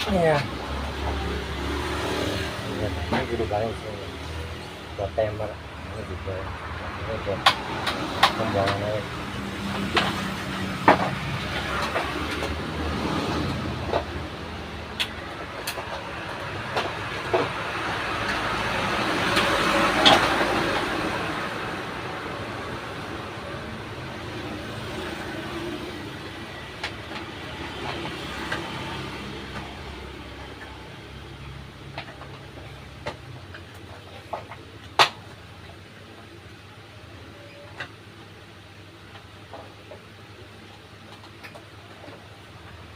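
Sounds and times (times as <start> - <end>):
traffic passing by: 0.0 - 42.9.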